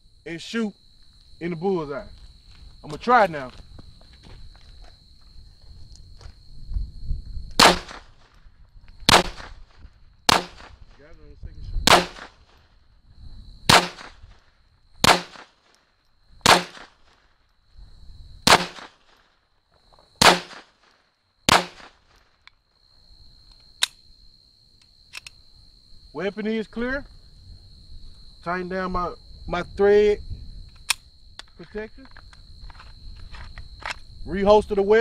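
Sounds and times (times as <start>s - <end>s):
pistol shots: 7.6s - 8.2s, 9.1s - 9.6s, 10.3s - 10.8s, 11.8s - 12.5s, 13.7s - 14.2s, 15.0s - 15.6s, 16.4s - 17.1s, 18.4s - 19.2s, 20.2s - 20.8s, 21.5s - 22.0s.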